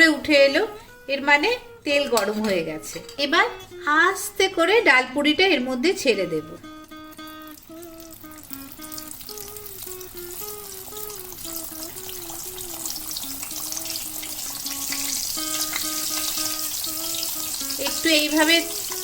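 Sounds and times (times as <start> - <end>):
background music simple melody: 0.0 - 19.0
food sizzling in hot oil: 6.7 - 19.0.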